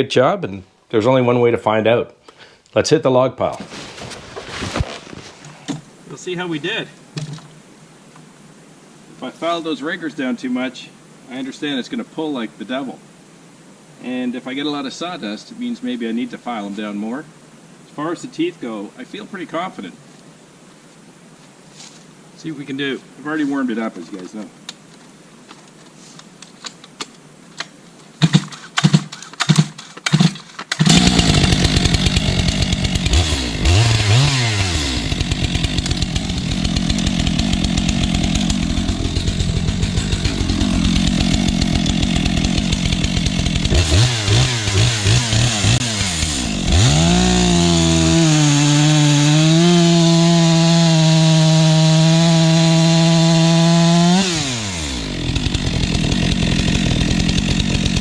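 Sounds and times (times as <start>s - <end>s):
starter cord pulls and knocks: 7.2s - 7.5s, 28.2s - 31.0s
chainsaw revving and cutting: 28.2s - 58.0s.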